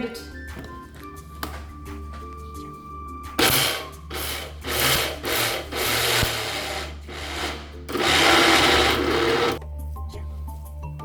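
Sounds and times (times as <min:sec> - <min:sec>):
mixer grinder grinding batter: 0:03.4 - 0:09.6.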